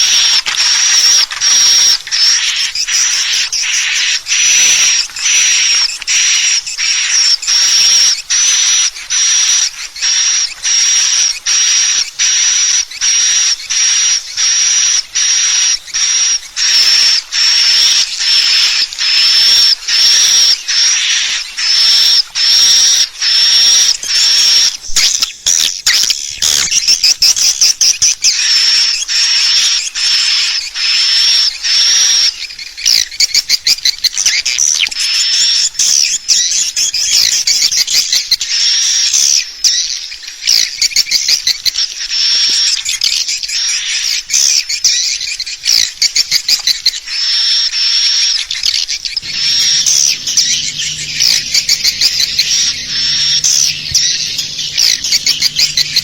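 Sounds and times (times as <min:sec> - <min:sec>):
recorded swiftlet calls: 0:00.0 - 0:56.0
low steady hum: 0:49.2 - 0:56.0.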